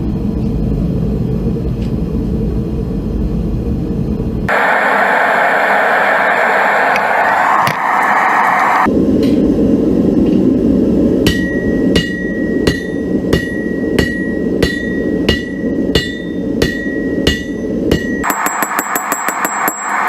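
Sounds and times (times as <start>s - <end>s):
low rushing noise: 4.5s - 11.9s
hammer striking iron on anvil: 11.2s - 20.0s
anvil ringing: 11.3s - 20.0s.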